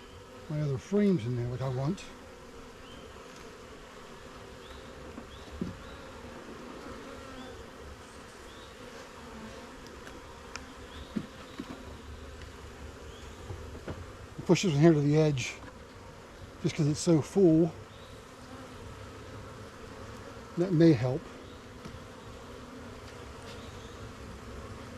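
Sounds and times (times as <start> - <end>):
honeybees buzzing: 0.0 - 24.9.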